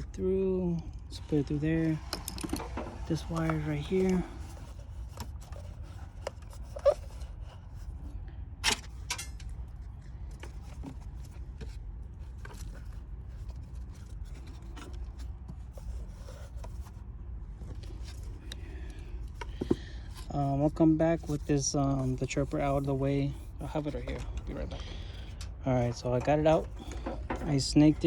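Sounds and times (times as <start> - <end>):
wire scraping through car panels: 0.7 - 28.0
steady low rumble: 7.2 - 28.0.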